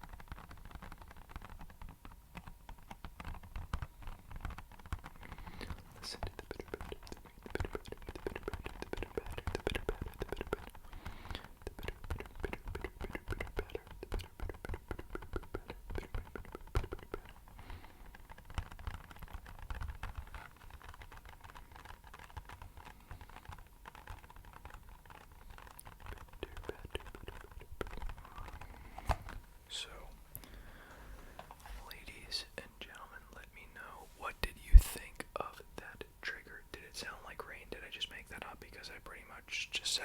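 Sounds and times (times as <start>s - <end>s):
fingertips tapping on box: 0.0s - 30.0s.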